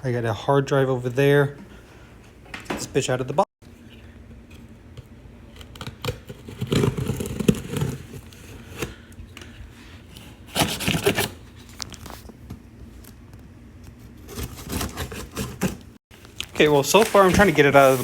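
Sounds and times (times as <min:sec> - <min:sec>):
cardboard scraping and tearing: 0:06.2 - 0:09.0, 0:10.3 - 0:11.4, 0:14.2 - 0:18.0.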